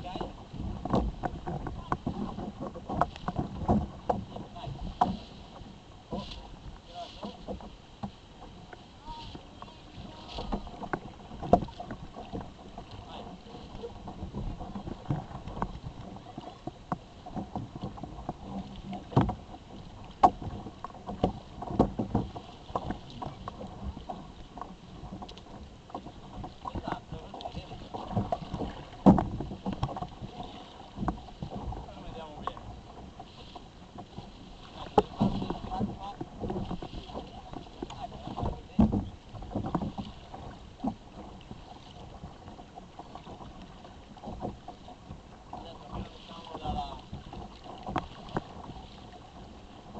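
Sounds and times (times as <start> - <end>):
water splashing against kayak hull: 0.0 - 49.9
sharp knocks on kayak: 0.2 - 5.4, 10.3 - 12.9, 14.0 - 33.0, 34.0 - 41.3.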